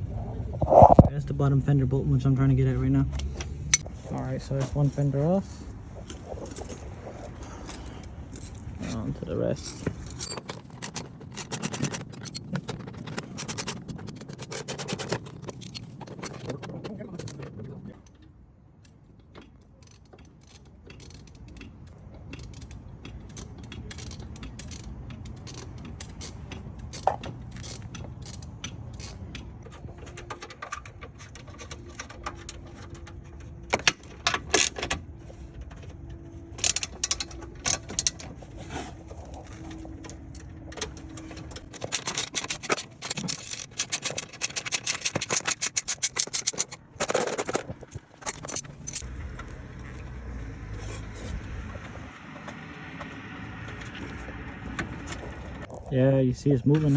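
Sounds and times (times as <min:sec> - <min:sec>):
ratchet wrench clicking: 0:41.8 - 0:46.8.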